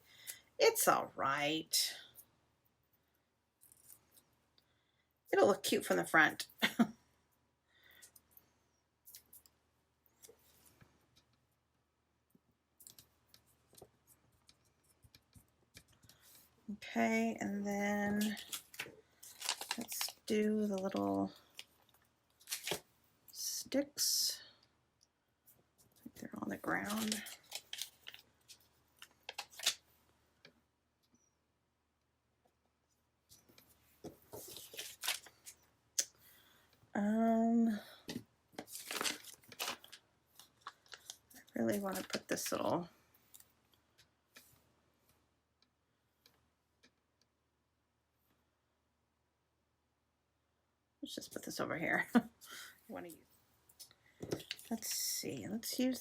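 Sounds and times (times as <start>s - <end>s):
paper rustling and clicks: 18.2s - 20.2s, 26.8s - 29.8s, 34.3s - 35.6s, 38.6s - 42.2s
stickers clicking and crinkling: 18.2s - 21.6s.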